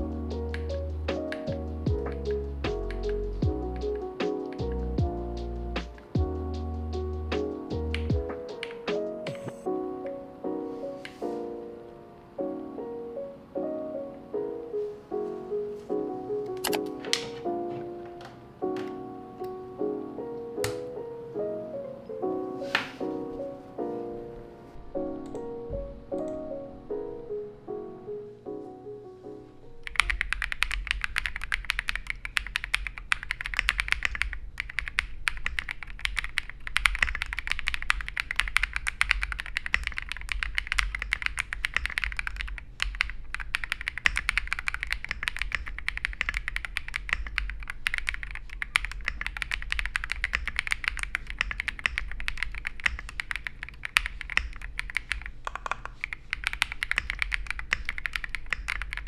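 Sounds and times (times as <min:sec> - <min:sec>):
mechanical keyboard typing: 0:16.5 - 0:17.4, 0:20.6 - 0:20.9, 0:29.8 - 0:59.0.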